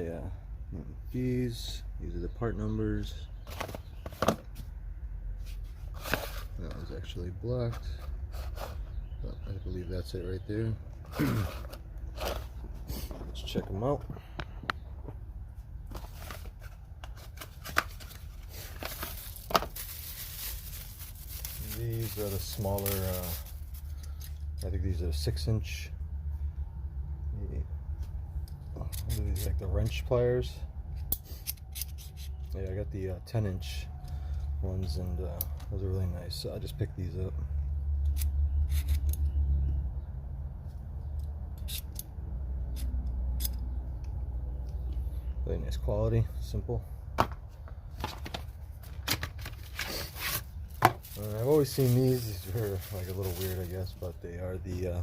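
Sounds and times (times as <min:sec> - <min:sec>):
steady low hum: 0:00.0 - 0:49.0
packaging rustling: 0:15.9 - 0:24.0, 0:48.0 - 0:54.2
metallic clicks of pliers: 0:31.0 - 0:32.6, 0:38.0 - 0:39.3, 0:41.1 - 0:44.8.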